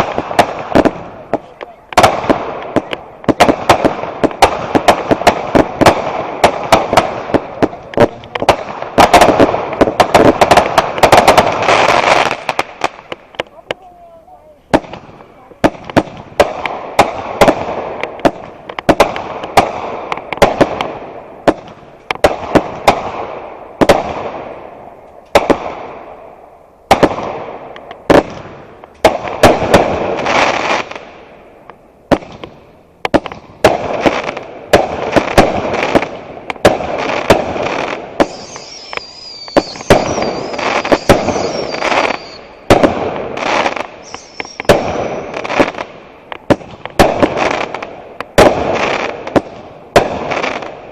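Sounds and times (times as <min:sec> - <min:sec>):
fireworks bangs and crackle: 0:00.0 - 0:50.9
high firework whistle: 0:38.2 - 0:42.6, 0:44.0 - 0:45.5.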